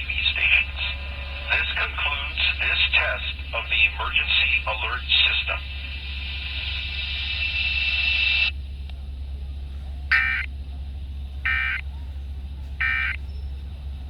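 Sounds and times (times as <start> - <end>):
low hum: 0.0 - 14.0
hiss: 5.8 - 8.5
digital data bursts: 10.1 - 10.5.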